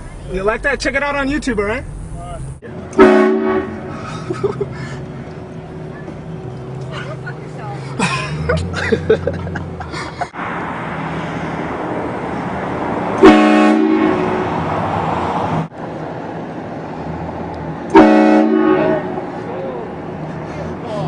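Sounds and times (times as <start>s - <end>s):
train horn blasting: 2.9s - 4.0s, 13.2s - 14.5s, 17.9s - 19.4s.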